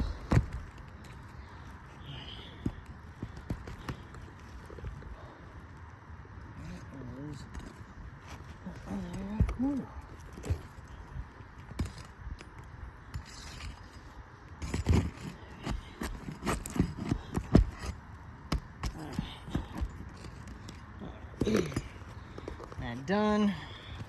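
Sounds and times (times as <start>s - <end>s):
tool scraping under roof shingles: 13.2s - 18.0s.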